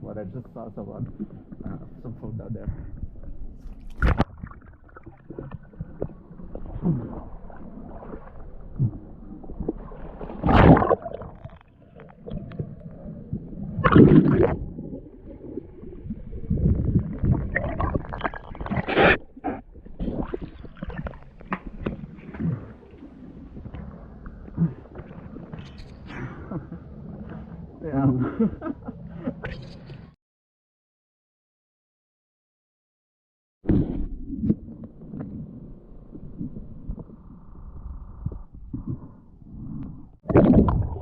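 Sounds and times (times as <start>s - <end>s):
muffled underwater gurgling: 0.0s - 30.1s, 33.7s - 41.0s
rushing bursts of bubbles: 3.9s - 23.4s, 40.3s - 41.0s.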